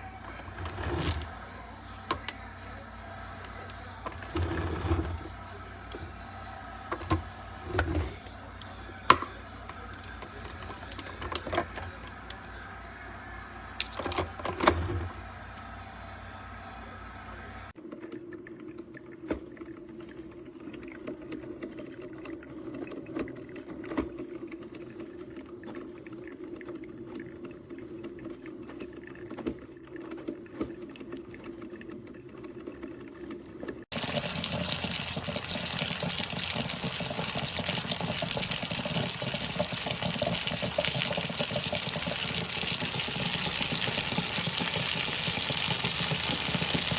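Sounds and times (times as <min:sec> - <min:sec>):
coffee maker humming: 0:00.0 - 0:46.9
coffee maker sputtering and gurgling: 0:00.0 - 0:46.9
coffee maker ticks and drips: 0:05.9 - 0:12.6, 0:17.8 - 0:46.9.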